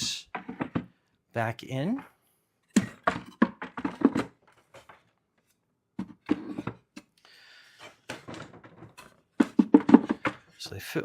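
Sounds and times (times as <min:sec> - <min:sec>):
wooden frames knocking on box: 0:00.3 - 0:00.9, 0:02.8 - 0:05.0, 0:08.0 - 0:10.6
frame scraping into place: 0:07.8 - 0:10.6.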